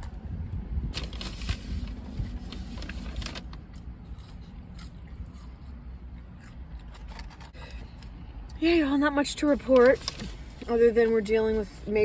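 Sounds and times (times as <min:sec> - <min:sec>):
car engine rumble: 0:00.0 - 0:12.0
food packaging rustles and clicks: 0:01.0 - 0:04.4, 0:06.8 - 0:08.1, 0:09.7 - 0:10.7.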